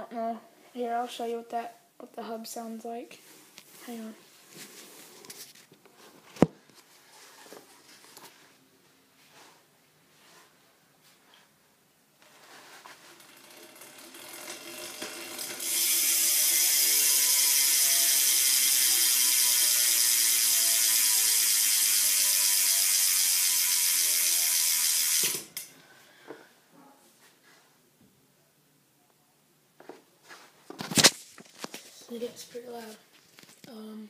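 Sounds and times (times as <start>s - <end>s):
bicycle hub ratcheting buzz: 13.0s - 25.7s.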